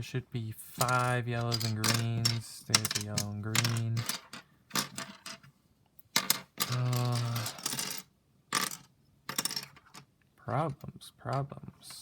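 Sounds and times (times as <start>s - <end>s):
plastic pieces clicking on table: 0.8s - 5.4s, 6.1s - 10.0s
person humming: 6.7s - 7.6s.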